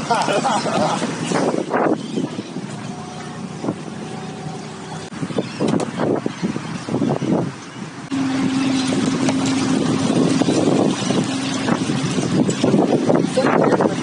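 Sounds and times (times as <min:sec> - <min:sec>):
outboard motor running: 0:00.0 - 0:14.0
wind on microphone: 0:00.0 - 0:14.0.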